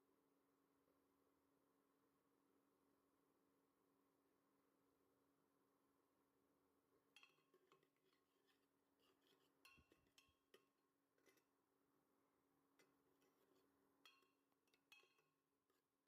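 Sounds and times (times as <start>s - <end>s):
kitchenware clinking and tapping: 7.0s - 11.5s, 12.8s - 15.8s.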